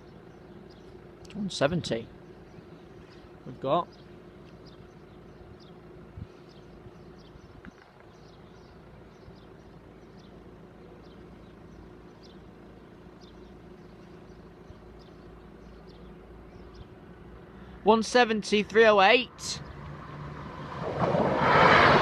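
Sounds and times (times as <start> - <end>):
birds chirping: 0.0 - 20.4
diesel train running: 8.7 - 22.0.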